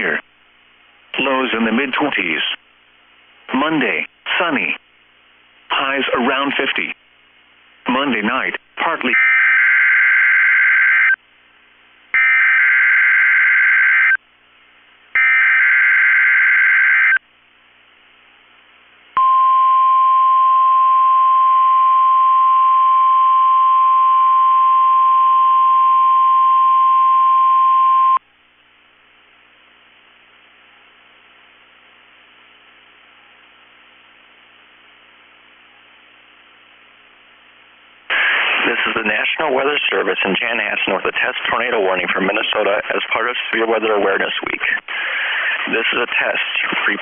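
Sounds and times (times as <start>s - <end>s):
faint static hiss: 15.8s - 22.2s.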